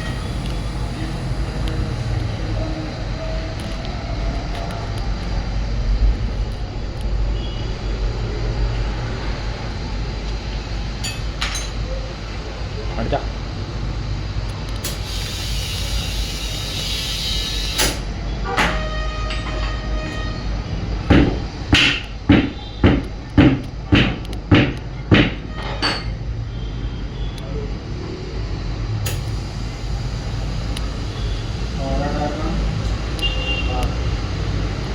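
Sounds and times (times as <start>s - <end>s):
road noise: 0.0s - 34.9s
steady background hum: 0.0s - 34.9s
vehicle engine rumble: 0.0s - 34.9s
sharp knocks: 21.1s - 25.5s.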